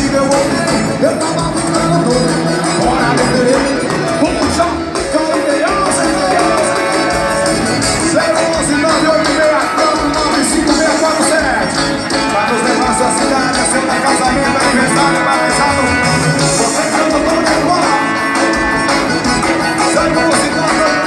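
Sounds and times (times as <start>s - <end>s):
drums and cymbals beat: 0.0s - 21.0s
sustained melody lines: 0.0s - 21.0s.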